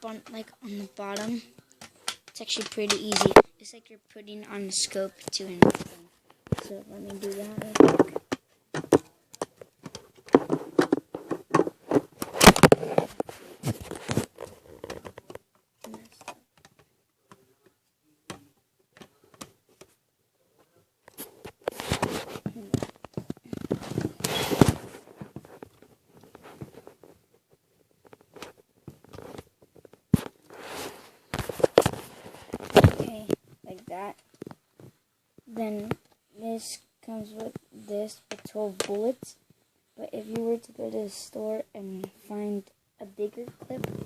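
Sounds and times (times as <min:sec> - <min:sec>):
plastic clicking and rattling: 0:01.0 - 0:03.4, 0:07.6 - 0:17.4.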